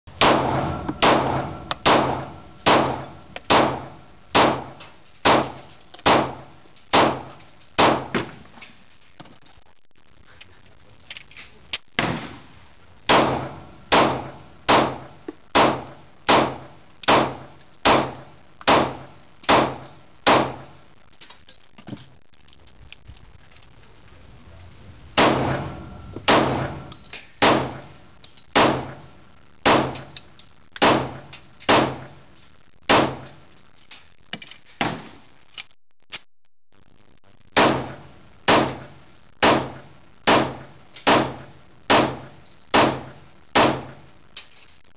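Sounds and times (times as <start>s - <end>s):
handgun shots: 0.2s - 8.2s, 37.6s - 43.9s.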